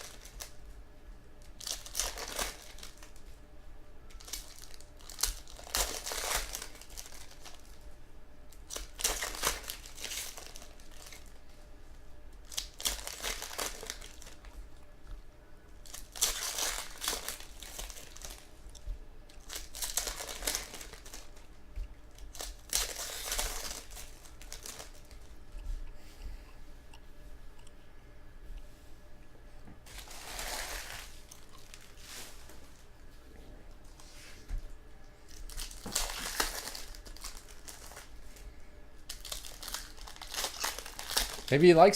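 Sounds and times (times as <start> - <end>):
wrappers tearing and crumpling: 0.0 - 0.6, 1.5 - 3.2, 4.1 - 7.8, 8.6 - 11.4, 12.4 - 14.5, 15.8 - 18.8, 19.4 - 21.5, 22.1 - 25.3, 29.9 - 32.6, 35.3 - 38.2, 39.1 - 41.9.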